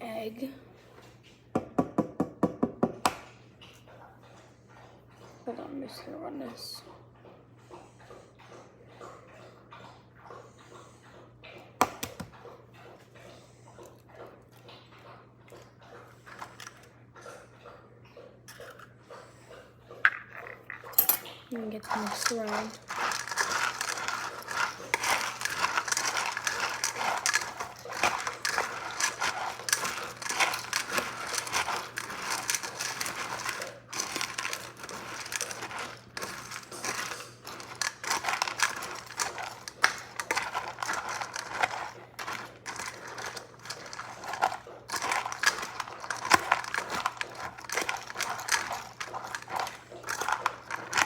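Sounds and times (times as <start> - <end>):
dog crunching dry kibble: 14.5 - 17.4, 20.0 - 51.0
food clicking against bowl: 21.9 - 51.0.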